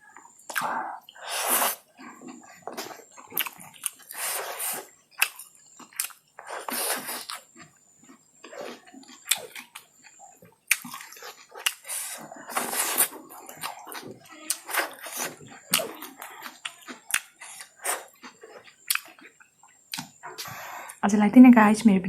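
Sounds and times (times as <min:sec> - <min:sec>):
person chewing noodles: 0:00.0 - 0:21.0
wet mouth clicks: 0:00.5 - 0:01.8.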